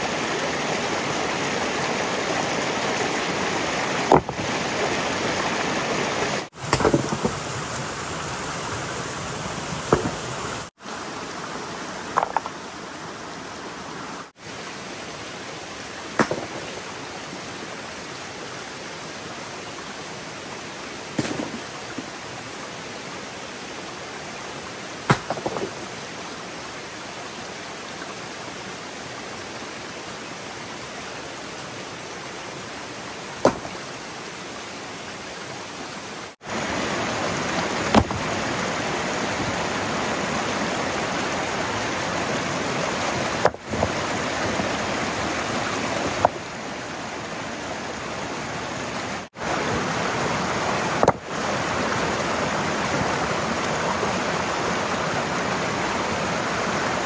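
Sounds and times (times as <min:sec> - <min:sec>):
flowing water: 0:00.0 - 0:57.0
sharp knocks: 0:09.9 - 0:10.2, 0:16.2 - 0:16.7, 0:33.4 - 0:33.8.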